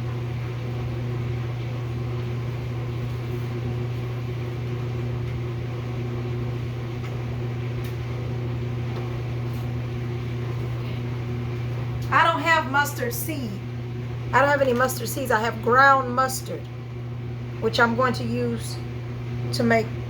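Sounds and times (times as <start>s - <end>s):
appliance electrical hum: 0.0s - 20.0s.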